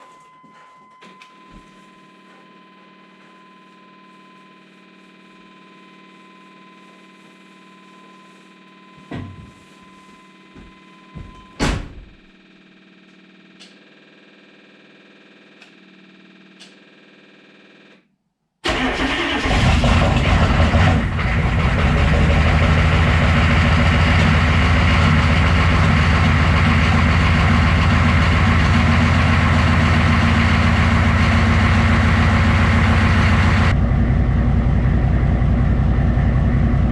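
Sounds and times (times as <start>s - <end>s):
diesel engine starting and idling: 18.6s - 36.9s.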